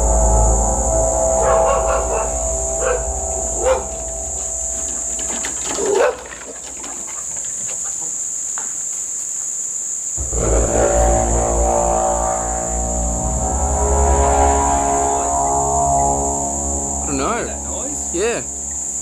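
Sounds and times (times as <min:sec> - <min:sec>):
deep droning hum: 0:00.0 - 0:06.0, 0:10.2 - 0:19.0.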